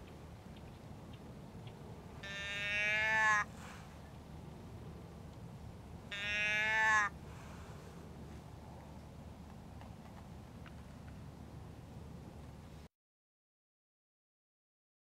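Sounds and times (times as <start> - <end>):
deer bleat call: 2.2 - 3.6, 6.1 - 7.2.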